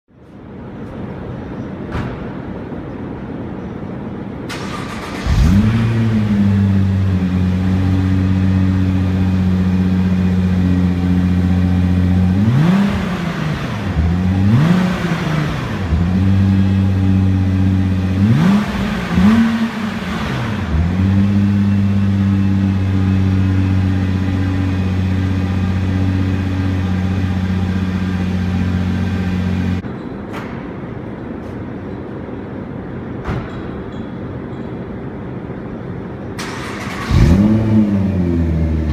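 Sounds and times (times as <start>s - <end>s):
car engine starting and idling: 4.0s - 29.8s, 35.5s - 38.9s
engine revving blips: 11.6s - 29.8s.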